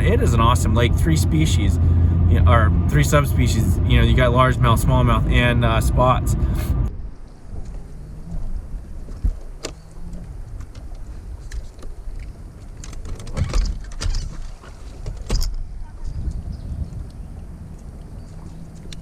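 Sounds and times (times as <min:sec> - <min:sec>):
vehicle engine rumbling: 0:00.0 - 0:19.0
sharp knocks and rattles: 0:12.8 - 0:15.6.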